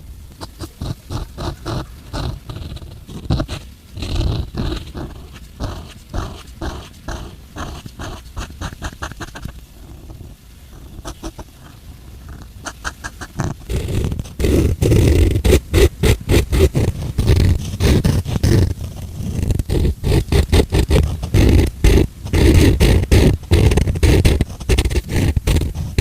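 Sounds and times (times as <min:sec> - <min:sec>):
person growling and roaring: 0:12.2 - 0:26.0.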